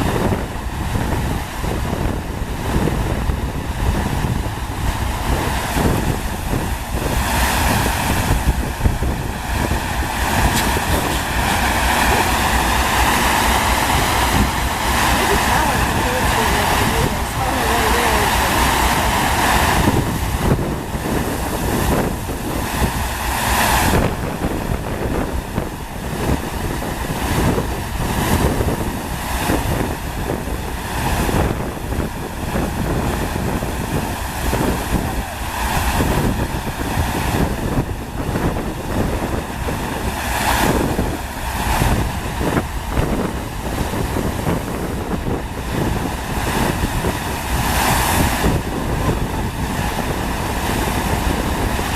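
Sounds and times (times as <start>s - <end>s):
rushing pumped water: 0.0s - 51.9s
wind buffeting microphone: 0.0s - 51.9s.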